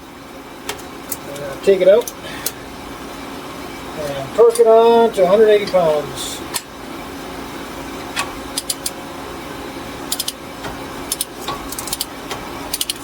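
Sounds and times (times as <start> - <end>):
steady low hum: 0.0 - 13.0
torque wrench ratchet clicking: 10.1 - 10.4.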